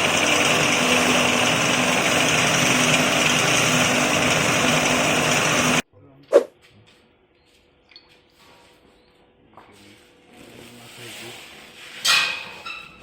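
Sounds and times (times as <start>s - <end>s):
grinding machine running: 0.0s - 5.8s.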